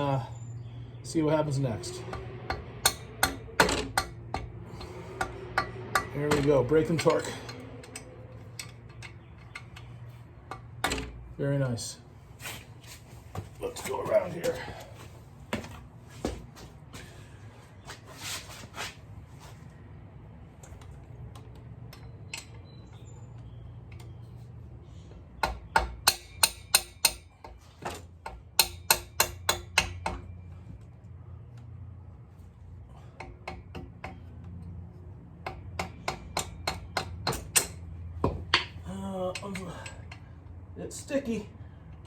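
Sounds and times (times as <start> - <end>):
low steady hum: 0.0 - 17.8.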